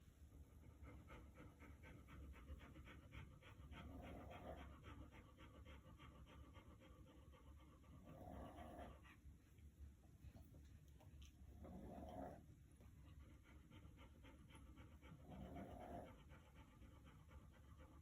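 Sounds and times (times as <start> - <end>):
long low dog breaths: 0.0 - 18.0
dog breathing fast: 0.5 - 9.3, 13.0 - 18.0.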